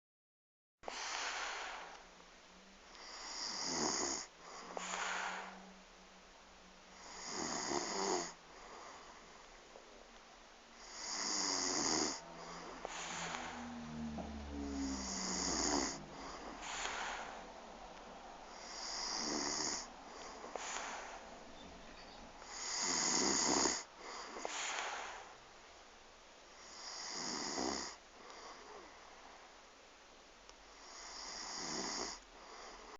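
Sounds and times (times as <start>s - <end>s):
rasping snore: 3.0s - 5.6s, 7.0s - 9.0s, 10.8s - 17.4s, 18.5s - 21.3s, 22.4s - 25.3s, 26.6s - 28.9s, 30.8s - 32.9s.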